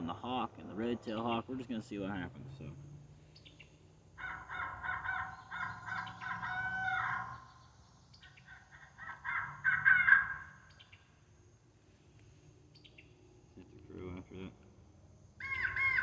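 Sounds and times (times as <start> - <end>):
electronic crow caws: 4.2 - 7.6, 8.2 - 10.7, 15.4 - 16.0.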